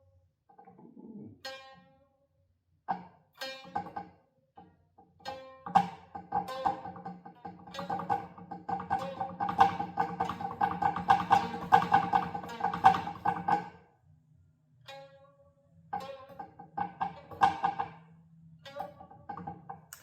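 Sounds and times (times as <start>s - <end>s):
plucked notes: 5.2s - 13.8s, 14.9s - 20.0s.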